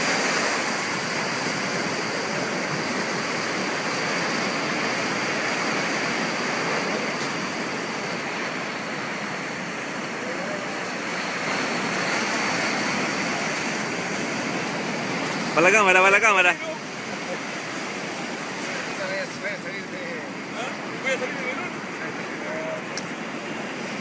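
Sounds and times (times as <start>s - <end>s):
ocean surf on sandy beach: 0.0s - 24.0s.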